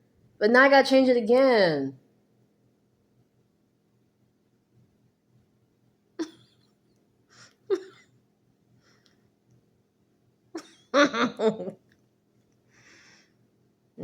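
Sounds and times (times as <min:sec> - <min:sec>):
faint steady hum: 0:00.0 - 0:14.0
person breathing: 0:07.3 - 0:07.7, 0:12.7 - 0:13.5.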